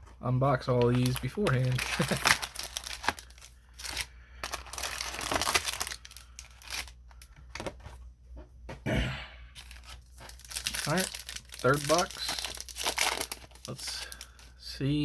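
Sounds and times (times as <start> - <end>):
plastic shrink wrap tearing and crinkling: 0.7 - 7.0, 9.6 - 14.5.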